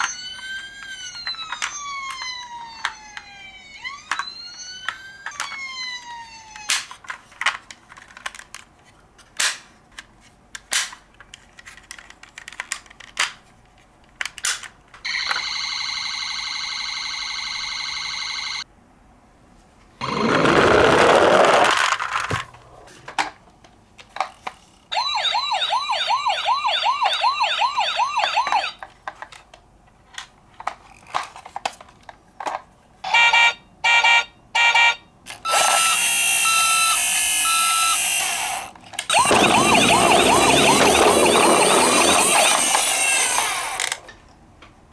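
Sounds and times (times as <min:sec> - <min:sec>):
toy electronic sirens: 0:00.0 - 0:07.0, 0:15.1 - 0:18.6, 0:24.9 - 0:28.8, 0:33.1 - 0:44.0.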